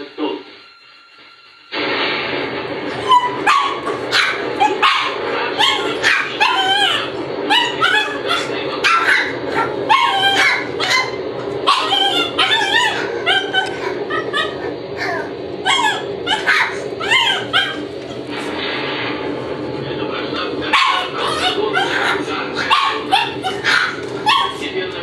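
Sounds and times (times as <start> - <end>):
puppies yelping and yipping: 3.0 - 18.4, 20.8 - 24.6.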